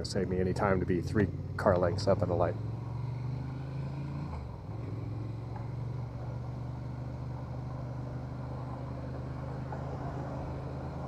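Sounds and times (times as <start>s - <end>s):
motorcycle engine idling: 0.0s - 2.8s.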